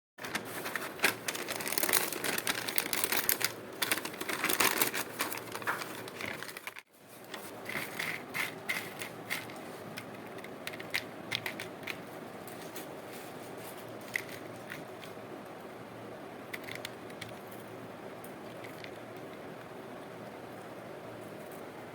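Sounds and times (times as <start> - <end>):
potato chips crackling and crunching: 0.2 - 6.8.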